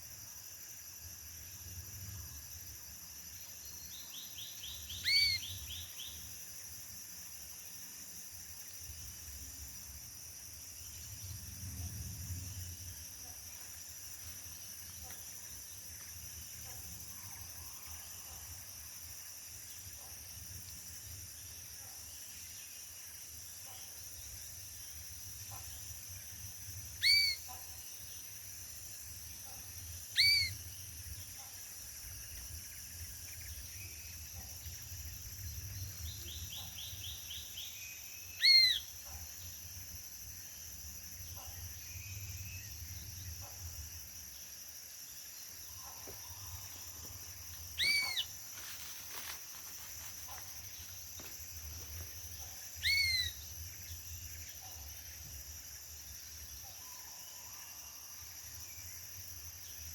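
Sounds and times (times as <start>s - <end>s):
high insect drone: 0.0s - 59.9s
loud arched bird whistles: 5.0s - 5.5s, 27.0s - 27.4s, 30.2s - 30.6s, 38.4s - 38.8s, 47.8s - 48.3s, 52.8s - 53.4s.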